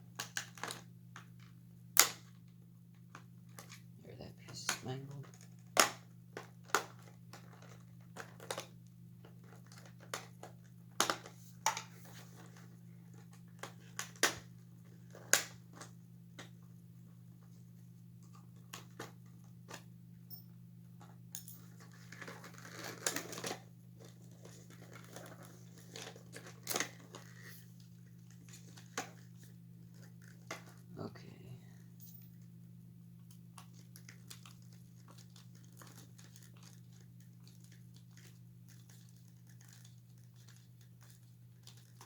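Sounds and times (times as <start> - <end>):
steady low hum: 10.6 - 35.3.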